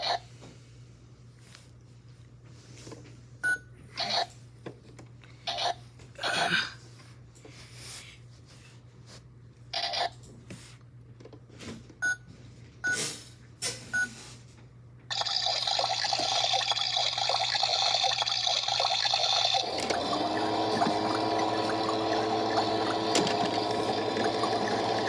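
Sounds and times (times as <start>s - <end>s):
water filling hiss: 15.1s - 23.1s
toy machine clicks and knocks: 15.1s - 25.0s
toy washing machine whirring: 15.1s - 25.0s.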